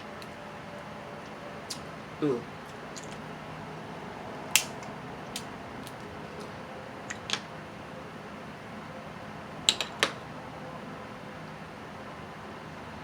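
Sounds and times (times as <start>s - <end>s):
crab shell cracking: 4.5s - 6.1s.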